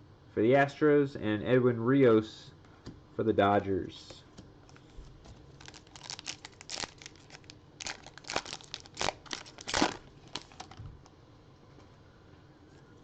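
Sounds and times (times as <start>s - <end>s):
wrapper tearing and crinkling: 5.5s - 10.8s.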